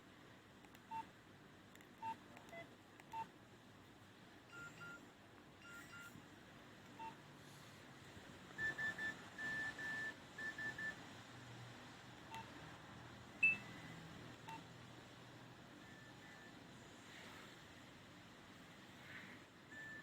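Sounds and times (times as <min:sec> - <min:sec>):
keypad beeps: 0:00.9 - 0:01.1, 0:02.0 - 0:03.3, 0:04.5 - 0:05.0, 0:05.6 - 0:06.2, 0:07.0 - 0:07.2, 0:08.6 - 0:11.0, 0:12.3 - 0:12.5, 0:13.4 - 0:13.8
rhythmic phone beeps: 0:04.5 - 0:05.0, 0:05.6 - 0:06.2, 0:08.6 - 0:11.0, 0:13.4 - 0:13.8.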